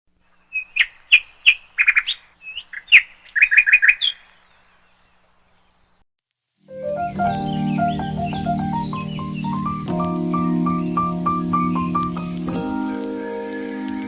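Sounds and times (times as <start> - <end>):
songbird chirping and trilling: 0.2 - 6.0, 6.8 - 14.0
music: 6.7 - 14.0.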